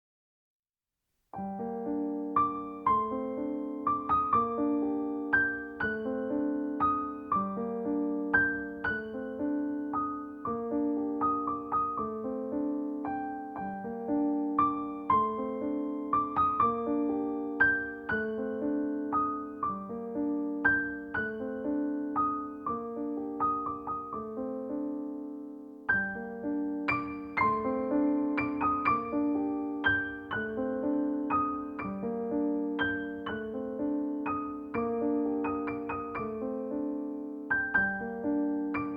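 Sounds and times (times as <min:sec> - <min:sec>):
gentle piano music: 0:01.3 - 0:38.9.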